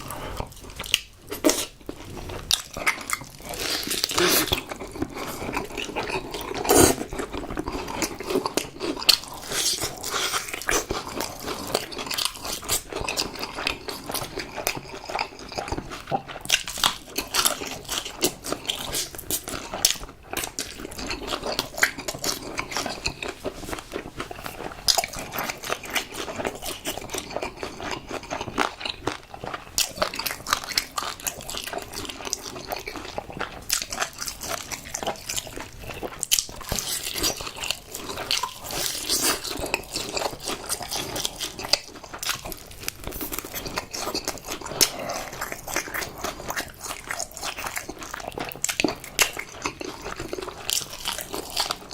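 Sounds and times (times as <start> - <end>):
crunchy chewing of fried chicken: 0.0 - 51.9.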